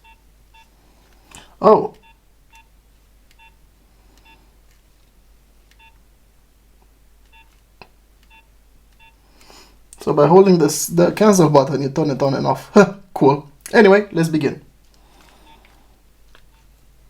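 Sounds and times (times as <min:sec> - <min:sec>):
phone keypad beeps: 0:03.4 - 0:03.6, 0:05.8 - 0:06.0, 0:07.3 - 0:07.5, 0:08.3 - 0:09.2.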